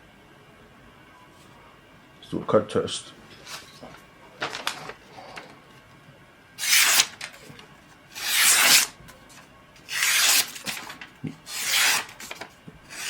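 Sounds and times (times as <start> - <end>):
cleaver slicing through material: 6.6 - 7.1, 8.2 - 8.9, 9.9 - 10.7, 11.5 - 12.2.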